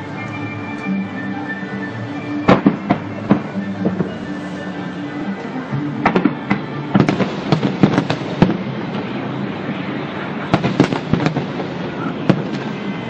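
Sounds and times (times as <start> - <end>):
fireworks bangs: 2.4 - 4.4, 6.0 - 13.0.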